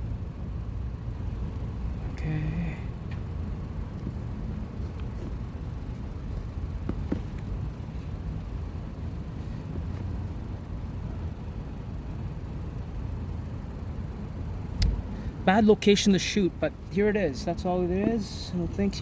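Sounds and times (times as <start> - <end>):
low background rumble: 0.0 - 19.0.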